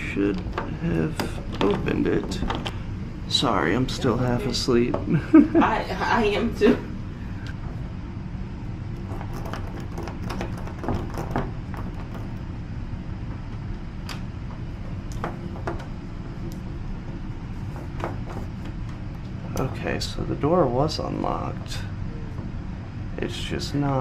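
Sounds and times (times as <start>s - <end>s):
steady low hum: 0.0s - 24.0s
door knob and lock rattling: 9.0s - 12.5s.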